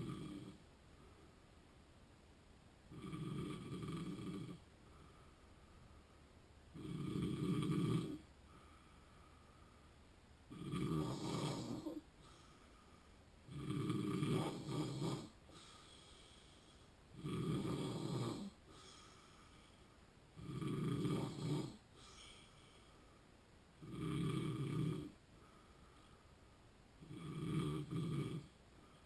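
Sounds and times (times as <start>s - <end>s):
man snoring: 0.0s - 0.6s, 2.9s - 4.6s, 6.8s - 8.2s, 10.5s - 12.0s, 13.5s - 15.8s, 17.1s - 19.1s, 20.4s - 22.4s, 23.8s - 25.2s, 27.0s - 28.5s
quiet breathing: 0.0s - 2.0s, 2.8s - 29.0s.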